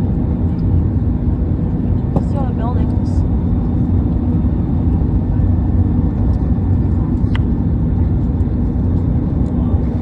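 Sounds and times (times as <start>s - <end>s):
airplane cabin rumble: 0.0s - 10.0s.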